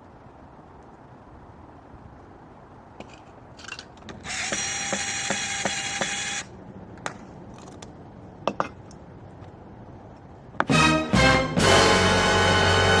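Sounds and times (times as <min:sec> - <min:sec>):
small power tool whining: 0:04.2 - 0:06.5.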